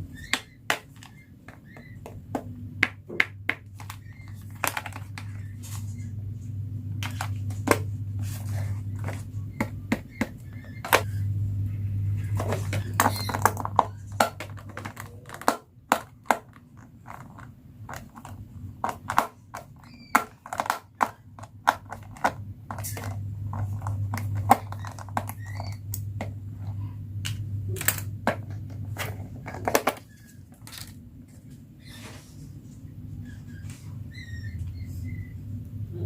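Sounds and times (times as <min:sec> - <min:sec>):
low steady hum: 0:00.0 - 0:36.0
plastic toys clicking and tapping: 0:00.2 - 0:05.4, 0:12.4 - 0:26.0, 0:27.3 - 0:31.0.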